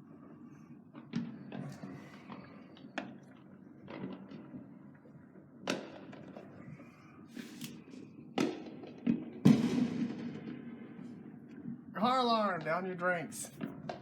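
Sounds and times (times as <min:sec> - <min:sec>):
fireworks bangs with rumbling echo: 0:00.0 - 0:14.0.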